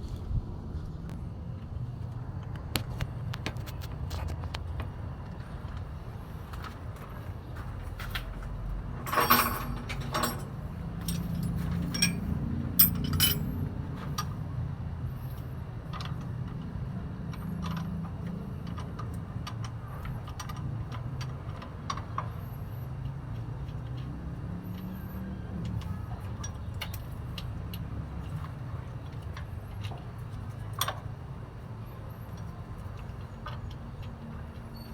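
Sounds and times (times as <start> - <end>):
hand tools clinking on metal: 8.2 - 13.7.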